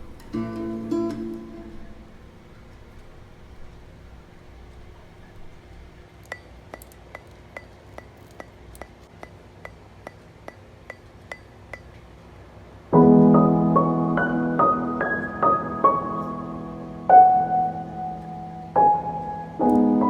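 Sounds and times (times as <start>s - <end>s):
loud piano chord: 12.9s - 20.0s.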